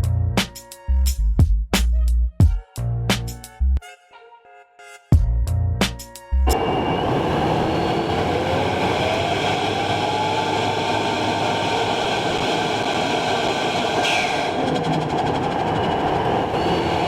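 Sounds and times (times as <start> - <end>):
faint tone rising in pitch: 6.4 - 13.4
car road and engine noise: 6.5 - 17.0.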